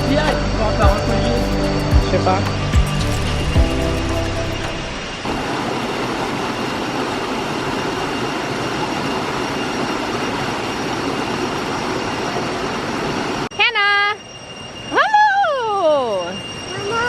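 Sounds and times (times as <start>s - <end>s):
waterfall rushing: 0.0s - 13.4s.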